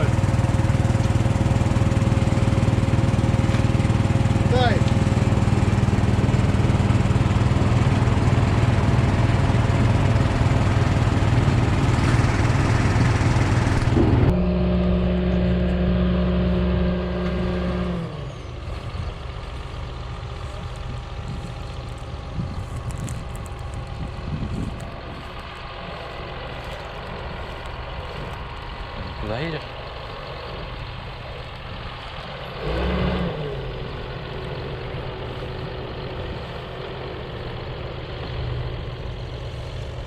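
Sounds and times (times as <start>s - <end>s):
tractor engine running: 0.0s - 40.0s
background rumble: 9.7s - 40.0s.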